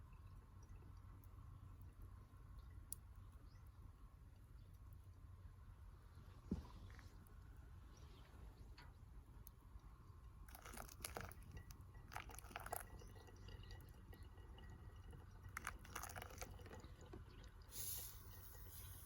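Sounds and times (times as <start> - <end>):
short hiss: 17.7 - 19.0.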